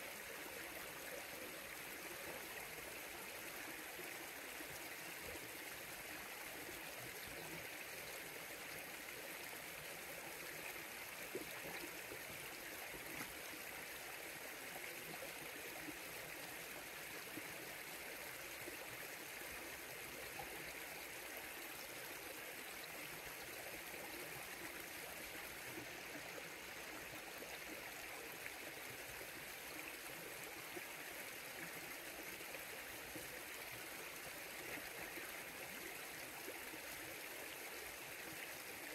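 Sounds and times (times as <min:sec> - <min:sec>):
river water flowing over rocks: 0:00.0 - 0:38.9.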